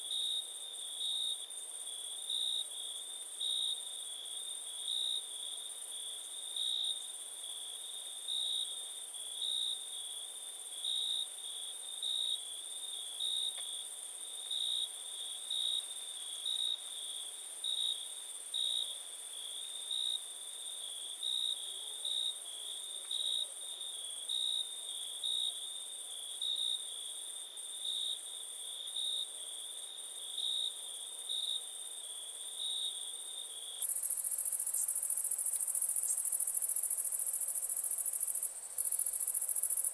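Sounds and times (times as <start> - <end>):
faint high insect whine: 0.0 - 39.9
crickets chirping: 30.2 - 39.9.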